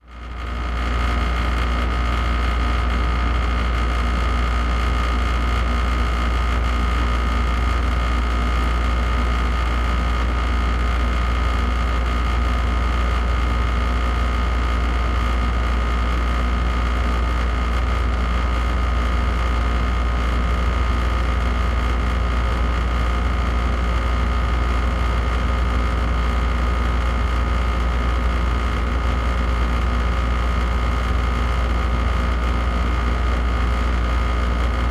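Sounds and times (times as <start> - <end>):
air conditioner humming: 23.6 - 34.9.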